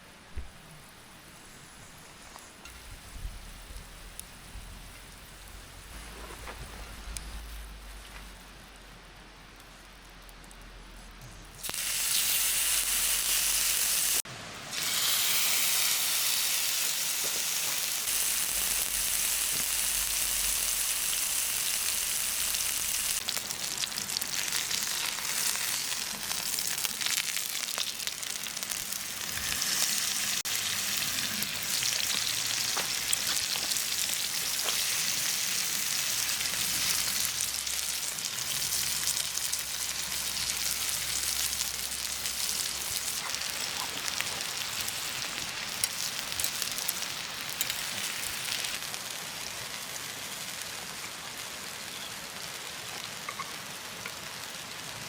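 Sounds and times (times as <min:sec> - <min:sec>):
meat sizzling: 0:11.6 - 0:55.0.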